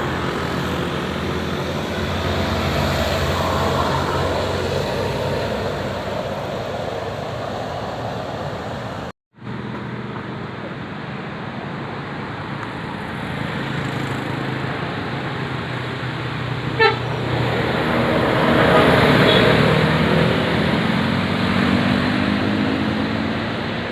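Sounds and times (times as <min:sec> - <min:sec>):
bus engine running: 0:00.0 - 0:23.9
street traffic noise: 0:00.0 - 0:23.9
horn toot: 0:16.8 - 0:17.2.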